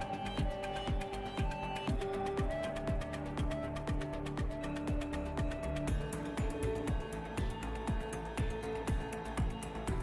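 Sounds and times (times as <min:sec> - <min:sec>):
deep kick drum: 0:00.0 - 0:10.0.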